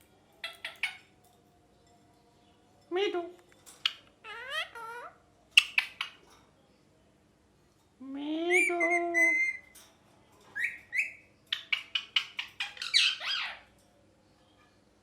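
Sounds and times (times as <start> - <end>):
parrot chirps and squawks: 0.4 - 1.2, 3.8 - 6.2, 8.5 - 9.7, 10.6 - 13.7.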